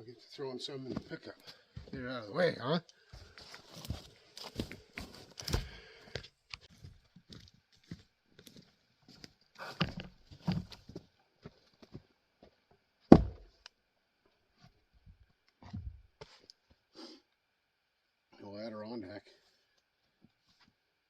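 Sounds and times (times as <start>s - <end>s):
firewood thunking into truck bed: 13.1s - 13.5s.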